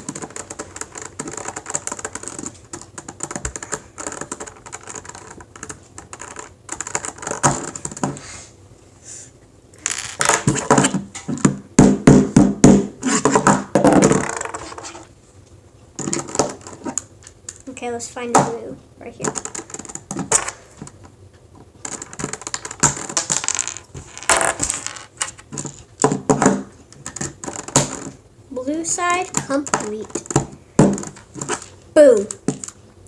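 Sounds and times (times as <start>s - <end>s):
plastic cube pieces clicking: 0.0s - 8.1s.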